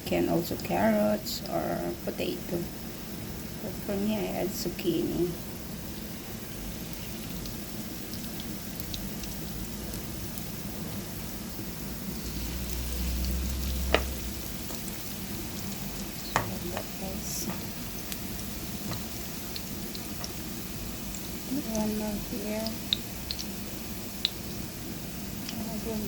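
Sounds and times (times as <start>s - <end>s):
patties sizzling in a frying pan: 0.0s - 26.0s.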